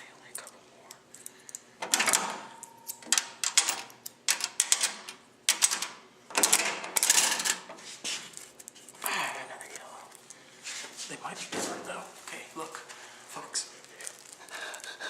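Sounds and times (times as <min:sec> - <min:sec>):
vending machine clicking and rattling: 0:01.8 - 0:07.7.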